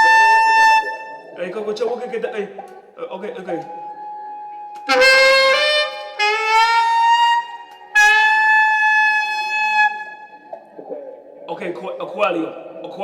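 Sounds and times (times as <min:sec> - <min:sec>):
saxophone playing held notes: 0:00.0 - 0:01.4, 0:04.1 - 0:10.6.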